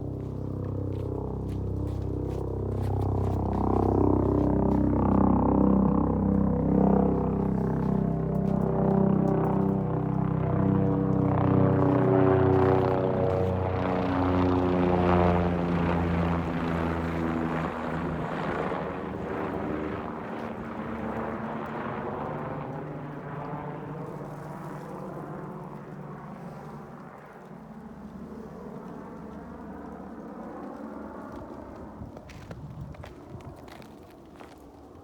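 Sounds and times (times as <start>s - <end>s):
helicopter rotor and engine drone: 0.0s - 35.0s.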